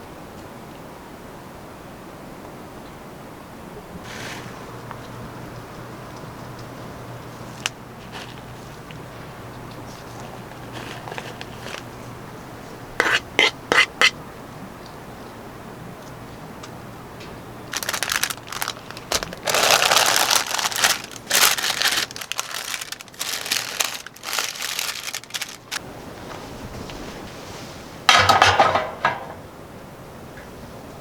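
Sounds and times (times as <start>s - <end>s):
crinkling and rustling: 4.1s - 12.2s, 17.6s - 27.4s.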